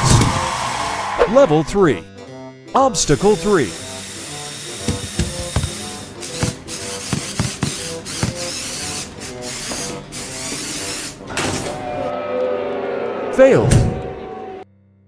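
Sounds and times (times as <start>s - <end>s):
background music: 0.0s - 14.6s
toy motor whirring: 3.0s - 11.9s.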